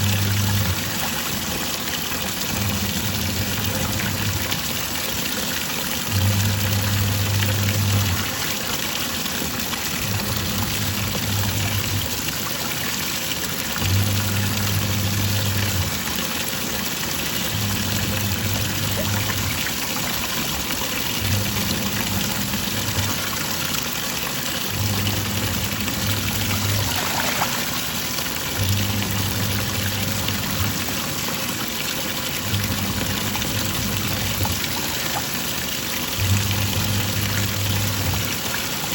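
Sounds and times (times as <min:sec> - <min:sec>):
motor humming: 0:00.0 - 0:12.3, 0:13.6 - 0:38.8
washing machine agitating: 0:00.0 - 0:38.9
water sloshing: 0:17.5 - 0:31.3.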